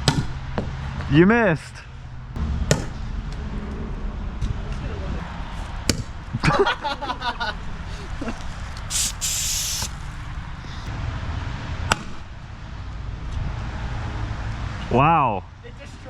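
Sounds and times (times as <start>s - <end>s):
gas grenade hissing: 8.8s - 10.2s.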